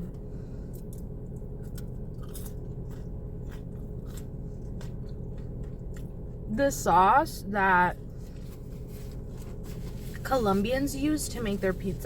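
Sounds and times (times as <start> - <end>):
person chewing food: 0.0 - 6.5
steady low hum: 0.0 - 12.0.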